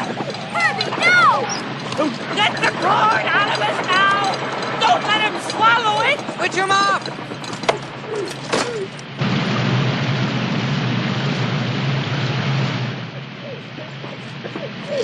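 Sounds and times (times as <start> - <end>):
electrical hiss with low hum: 8.9 - 15.0.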